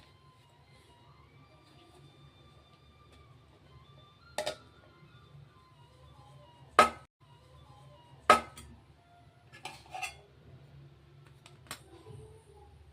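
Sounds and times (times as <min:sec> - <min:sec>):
metal utensil clinking cookware: 0:09.5 - 0:10.3.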